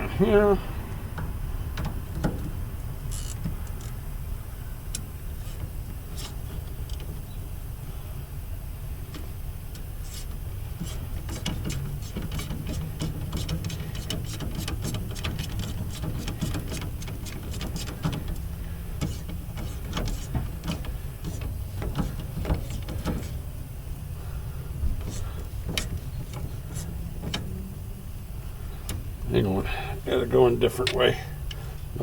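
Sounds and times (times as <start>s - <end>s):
steady low hum: 0.0s - 32.0s
hand ratchet clicking: 3.1s - 4.0s.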